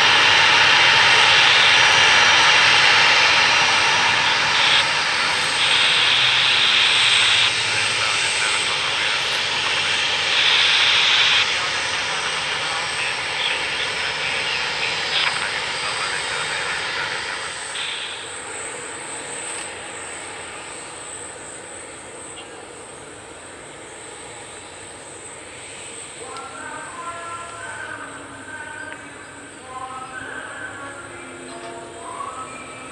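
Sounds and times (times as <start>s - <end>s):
jet engine hiss and whine: 0.0s - 32.9s.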